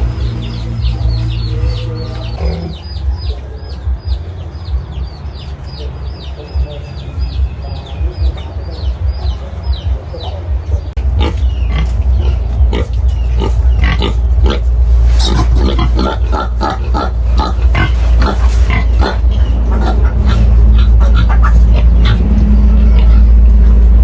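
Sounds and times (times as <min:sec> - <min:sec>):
piglets squealing and grunting: 0:00.0 - 0:04.2, 0:11.0 - 0:24.0
loud low rumble: 0:00.0 - 0:24.0.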